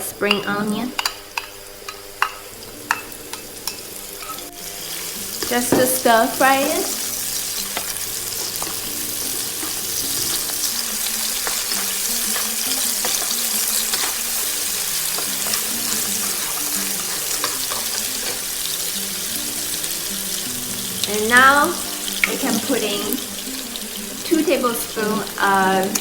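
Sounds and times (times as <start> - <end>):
vegetables sizzling in oil: 0.0 - 26.0
stirring ticks: 6.9 - 26.0.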